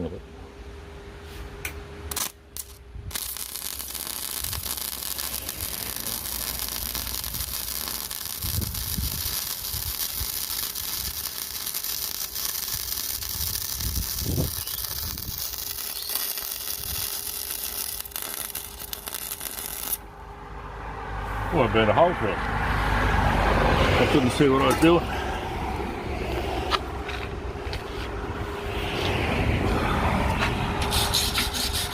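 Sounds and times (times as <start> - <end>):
welding arc crackling hiss: 2.1 - 20.0.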